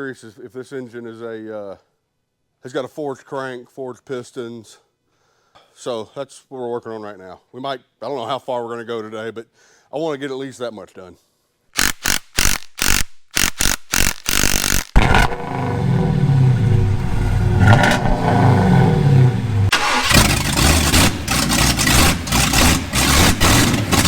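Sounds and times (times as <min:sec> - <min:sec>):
engine starting and running: 0:14.0 - 0:24.0.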